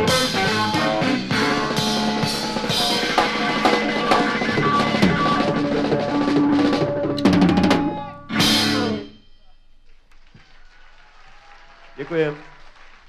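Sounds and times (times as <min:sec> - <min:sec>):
drum kit beat: 0:00.0 - 0:09.2
instrumental rock music: 0:00.0 - 0:09.4.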